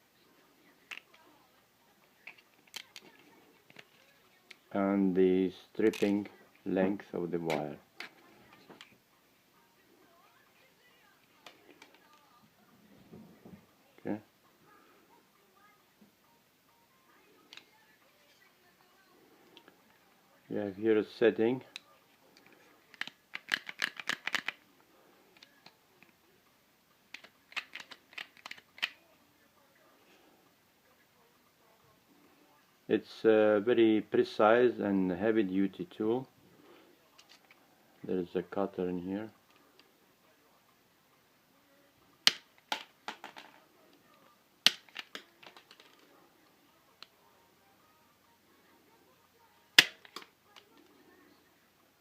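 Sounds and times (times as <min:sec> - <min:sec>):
wire stripper clicking and snapping: 0:22.9 - 0:24.6, 0:27.1 - 0:29.0, 0:49.8 - 0:50.3.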